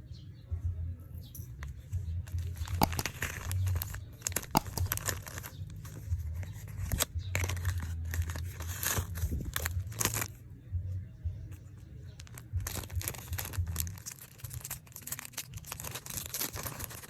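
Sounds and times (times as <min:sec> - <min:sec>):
low steady hum: 0:00.0 - 0:17.0
plastic packaging crinkling and tearing: 0:02.3 - 0:10.4, 0:12.2 - 0:17.0.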